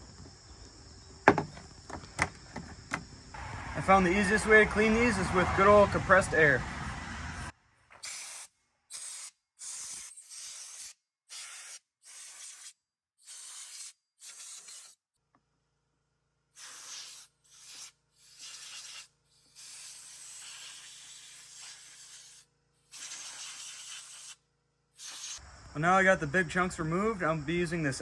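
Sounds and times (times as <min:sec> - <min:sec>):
compressed air blow gun hissing: 0:08.0 - 0:15.0, 0:16.6 - 0:24.4, 0:25.0 - 0:25.4.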